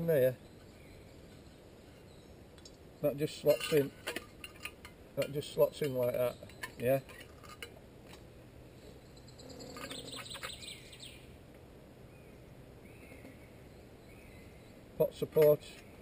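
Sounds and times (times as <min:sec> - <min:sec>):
faint bird chirps: 0:00.2 - 0:02.5, 0:08.8 - 0:11.4, 0:12.0 - 0:14.8
rustling clatter of light clicks: 0:03.6 - 0:08.3.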